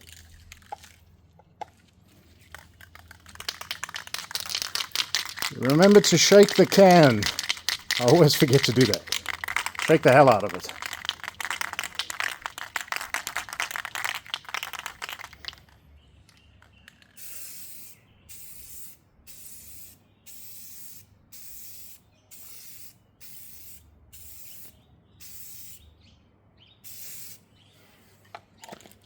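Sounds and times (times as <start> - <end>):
spray can rattling when shaken: 2.4 - 15.8, 16.6 - 25.8, 26.9 - 27.4, 28.6 - 29.0
spray paint hissing bursts: 2.8 - 15.6, 17.1 - 25.8, 26.8 - 27.4.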